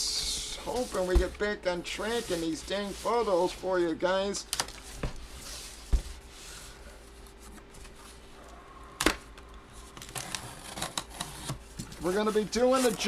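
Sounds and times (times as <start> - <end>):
dull thump on cardboard box: 5.9 - 6.2
cardboard packaging rustling: 9.9 - 13.0.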